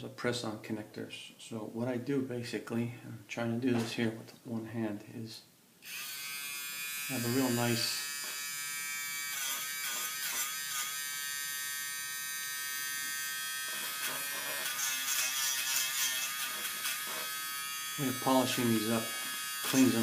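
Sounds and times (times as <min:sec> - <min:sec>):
electric wire brush tool buzzing: 0:05.8 - 0:20.0.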